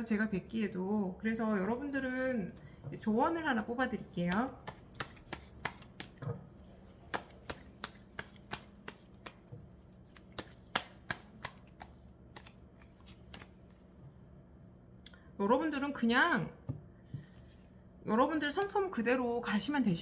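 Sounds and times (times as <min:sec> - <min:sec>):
cards being shuffled: 0:04.3 - 0:06.2, 0:07.1 - 0:13.9
sharp card snaps: 0:10.1 - 0:13.5.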